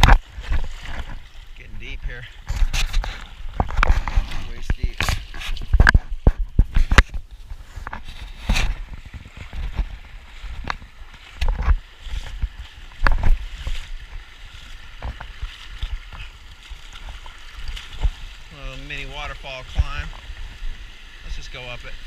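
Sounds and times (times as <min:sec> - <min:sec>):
person wading through water: 0:00.0 - 0:22.0
river water rushing: 0:08.6 - 0:22.0.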